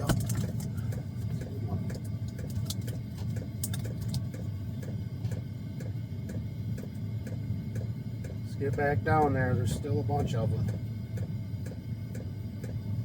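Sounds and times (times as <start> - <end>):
fuel pump ticking: 0.0 - 13.0
heater blower humming: 0.0 - 13.0.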